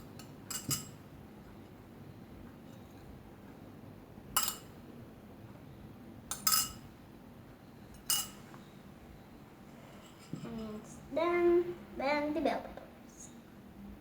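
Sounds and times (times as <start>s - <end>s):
cutlery clinking against a dish: 0.0s - 1.0s, 4.4s - 4.7s, 6.3s - 6.8s, 8.0s - 8.4s.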